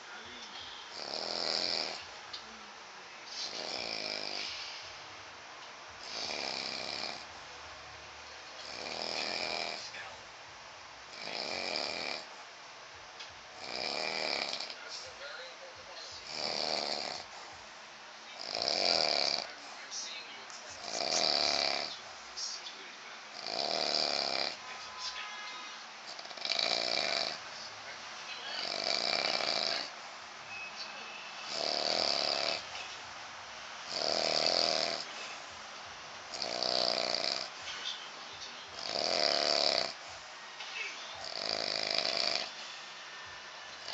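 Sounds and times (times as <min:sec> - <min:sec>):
man snoring: 0:00.9 - 0:02.1, 0:03.3 - 0:04.6, 0:06.0 - 0:07.4, 0:08.6 - 0:10.0, 0:11.1 - 0:12.4, 0:13.5 - 0:14.8, 0:16.2 - 0:17.4, 0:18.4 - 0:19.7, 0:20.8 - 0:22.1, 0:23.3 - 0:24.7, 0:26.1 - 0:27.4, 0:28.6 - 0:30.0, 0:31.4 - 0:32.9, 0:33.9 - 0:35.5, 0:36.3 - 0:37.6, 0:38.8 - 0:40.0, 0:41.2 - 0:42.8.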